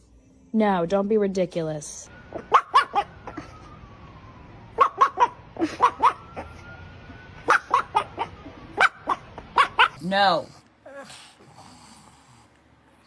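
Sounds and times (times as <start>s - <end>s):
dog yipping and whining: 2.3s - 3.6s, 4.8s - 6.7s, 7.4s - 10.1s.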